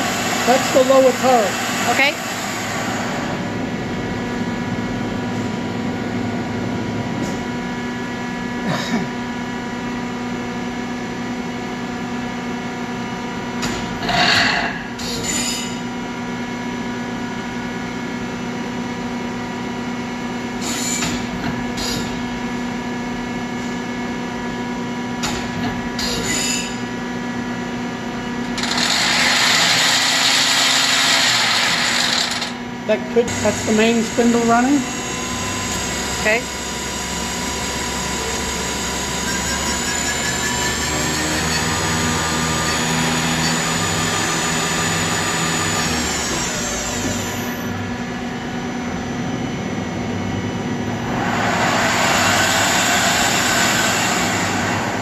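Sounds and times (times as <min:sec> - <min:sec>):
lathe machine hum: 0:00.0 - 0:08.7, 0:27.0 - 0:55.0.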